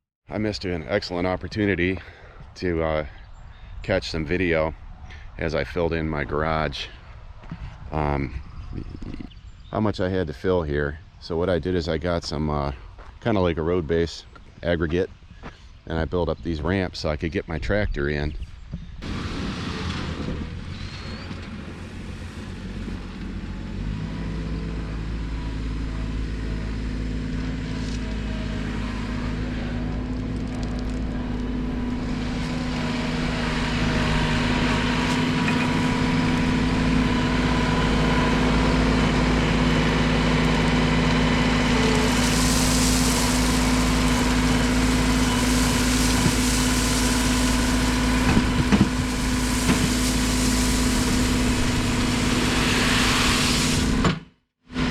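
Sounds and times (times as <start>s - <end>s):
tractor engine running: 19.0s - 54.9s
hissing: 41.4s - 54.0s.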